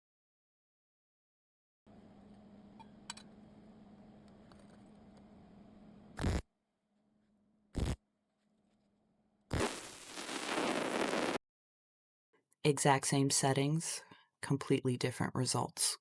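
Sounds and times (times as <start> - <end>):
welding arc crackle: 6.2 - 6.4, 7.8 - 8.0, 9.5 - 11.4.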